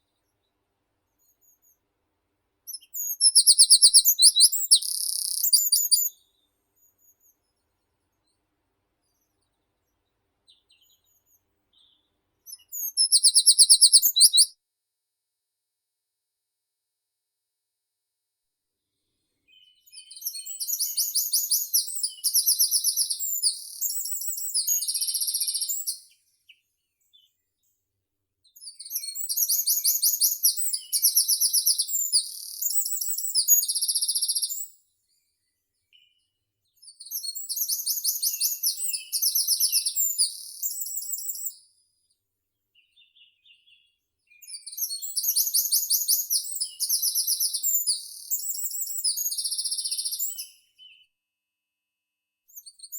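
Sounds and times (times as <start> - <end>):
songbird singing rapid trills: 2.7 - 6.2, 11.8 - 14.5, 19.5 - 26.0, 28.8 - 34.7, 42.9 - 51.0.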